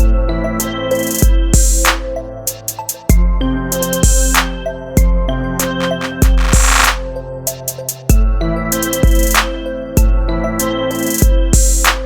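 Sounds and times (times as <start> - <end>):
snare hit: 5.6 - 7.1.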